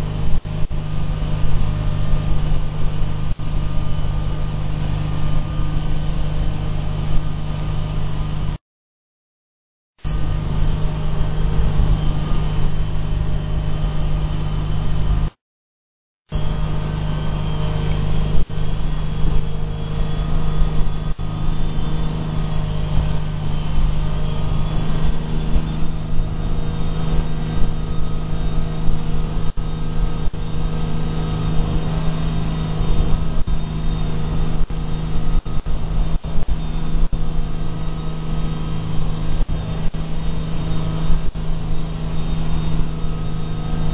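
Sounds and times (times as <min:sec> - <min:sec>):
boat engine running: 0:00.0 - 0:08.6, 0:10.0 - 0:15.4, 0:16.3 - 0:43.9.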